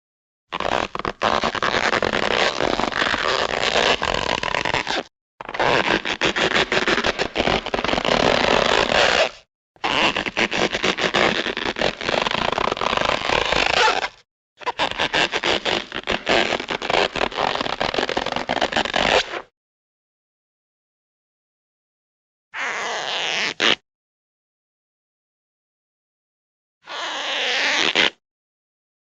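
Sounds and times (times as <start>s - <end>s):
rubber balloon squeaking: 0.5s - 19.5s, 22.6s - 23.8s, 26.9s - 28.2s.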